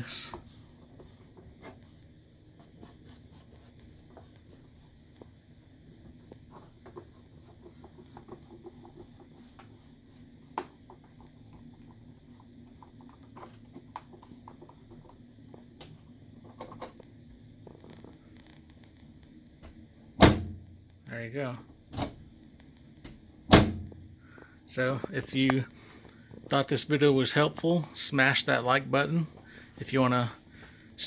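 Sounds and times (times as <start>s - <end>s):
low steady hum: 0.0s - 31.0s
microwave door and latch clicks: 21.9s - 22.2s, 23.5s - 24.0s.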